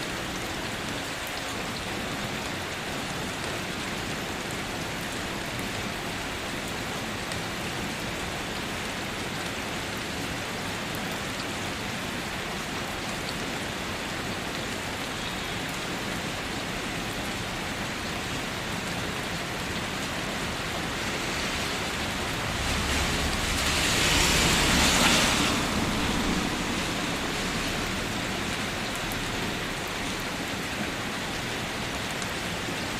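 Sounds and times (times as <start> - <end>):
rain pattering: 0.0 - 32.9
low rumble: 21.4 - 29.4.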